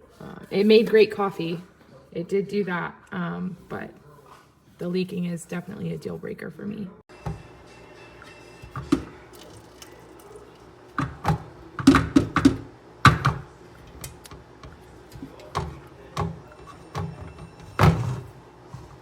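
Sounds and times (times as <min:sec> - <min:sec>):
knocks of hard objects handled: 0:08.6 - 0:09.1, 0:11.0 - 0:18.3.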